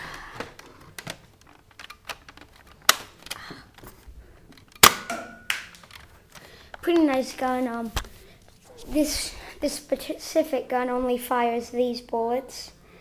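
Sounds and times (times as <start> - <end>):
plastic toy blaster clicks and knocks: 0.4 - 3.9.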